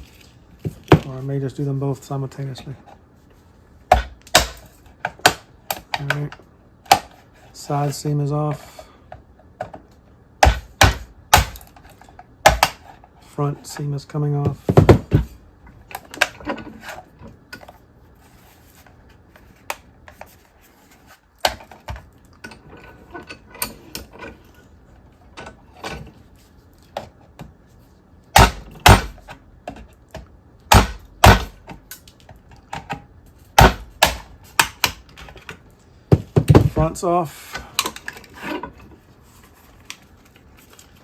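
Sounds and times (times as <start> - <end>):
sharp plastic knocks and snaps: 10.4 - 12.8, 33.6 - 35.5.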